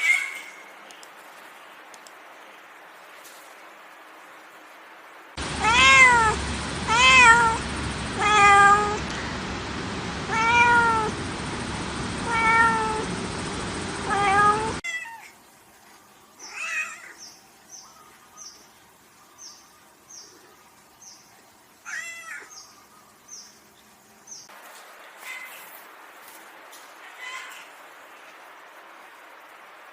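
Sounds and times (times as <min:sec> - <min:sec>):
steady hiss: 0:00.0 - 0:21.9, 0:22.5 - 0:29.9
cat meowing: 0:05.6 - 0:07.6, 0:08.2 - 0:09.0, 0:10.3 - 0:11.1, 0:12.3 - 0:13.0, 0:14.1 - 0:15.3.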